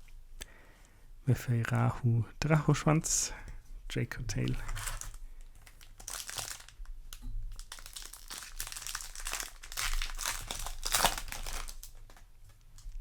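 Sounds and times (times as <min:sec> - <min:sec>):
foil wrapper crinkling: 0:04.4 - 0:06.9, 0:07.5 - 0:13.0.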